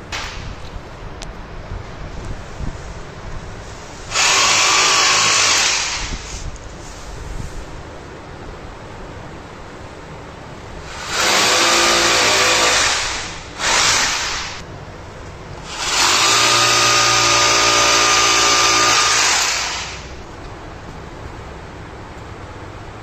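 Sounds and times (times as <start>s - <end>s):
electric drill boring into wall: 4.1s - 6.3s, 10.8s - 14.6s, 15.7s - 20.1s.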